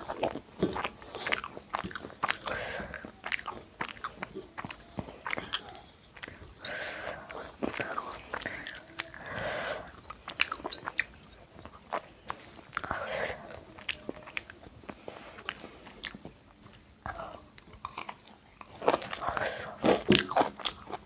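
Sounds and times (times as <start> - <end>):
chewing mouth sounds: 0.0 - 21.0.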